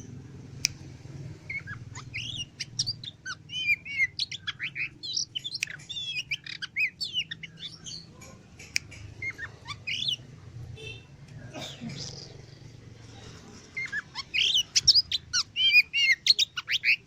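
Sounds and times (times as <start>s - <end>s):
bird singing whistles and trills: 1.5s - 7.8s, 9.2s - 10.2s, 13.8s - 17.0s.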